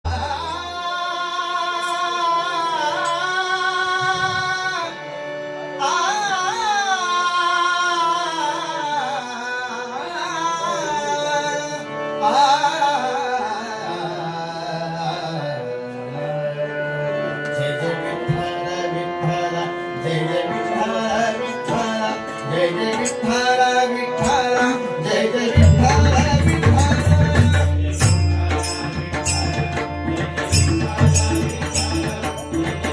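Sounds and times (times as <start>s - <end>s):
harmonium: 0.0s - 32.9s
person singing devotional song: 0.0s - 32.9s
drum: 25.6s - 32.9s.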